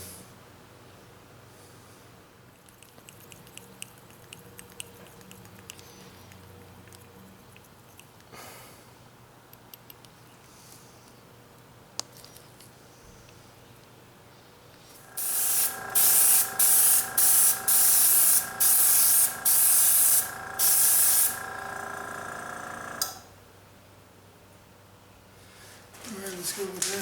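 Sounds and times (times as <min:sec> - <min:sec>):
air compressor humming: 0:14.9 - 0:23.4
airbrush hissing bursts: 0:15.0 - 0:23.1
compressor switch click: 0:20.2 - 0:23.3.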